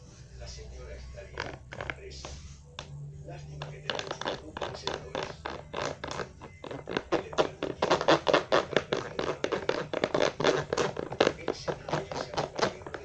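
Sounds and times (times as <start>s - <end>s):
utensil stirring slime in bowl: 0.8s - 2.6s, 3.4s - 13.0s.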